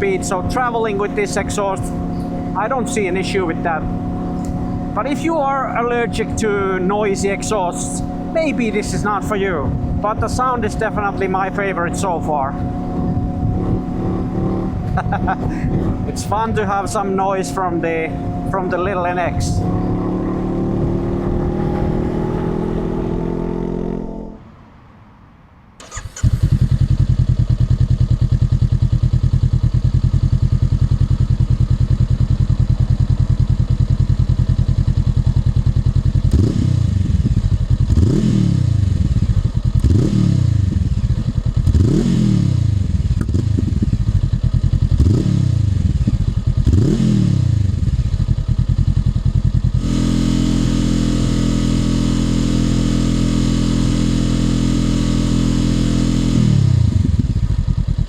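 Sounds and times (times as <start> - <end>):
motorcycle engine idling: 0.0 - 23.4, 25.9 - 58.0
engine revving: 0.0 - 24.4, 36.1 - 48.7, 49.6 - 58.0.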